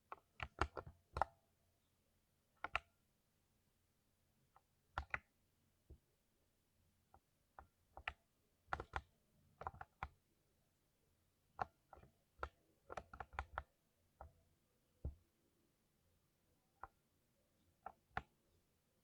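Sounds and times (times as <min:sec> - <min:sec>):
keyboard typing: 0:11.6 - 0:13.7.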